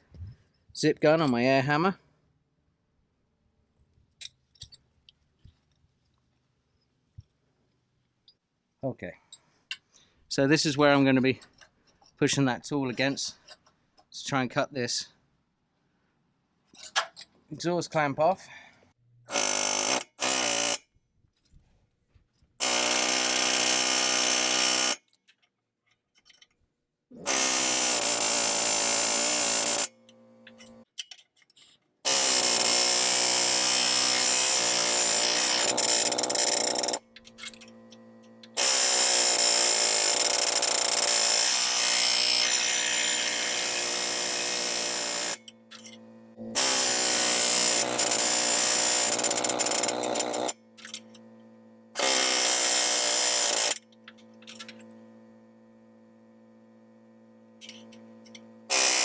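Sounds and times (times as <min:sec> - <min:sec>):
pneumatic air hammer chiselling metal: 0:19.3 - 0:20.8, 0:22.6 - 0:25.0, 0:27.2 - 0:31.2, 0:32.0 - 0:55.0, 0:57.6 - 0:59.0.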